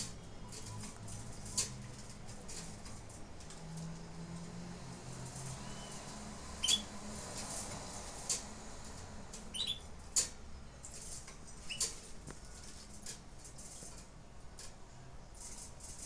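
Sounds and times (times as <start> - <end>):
canaries chirping: 5.2 - 13.0.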